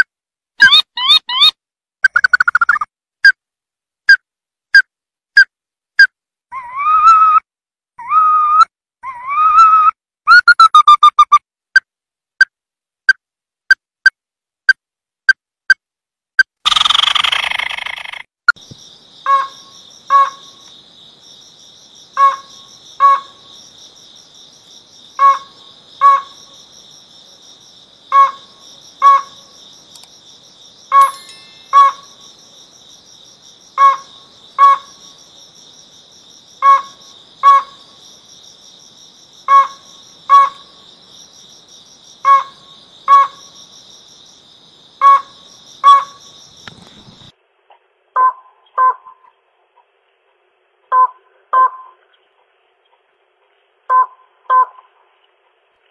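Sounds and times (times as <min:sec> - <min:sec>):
crickets droning: 0:18.6 - 0:47.5.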